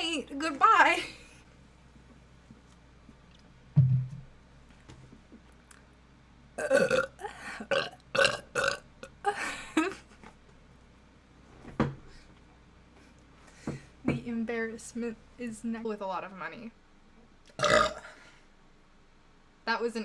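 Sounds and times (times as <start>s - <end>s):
person burping: 6.6s - 9.3s, 17.6s - 18.2s.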